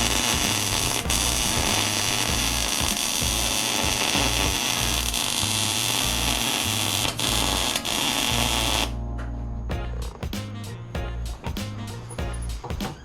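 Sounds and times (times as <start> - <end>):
arc welder crackling hiss: 0.0 - 8.9.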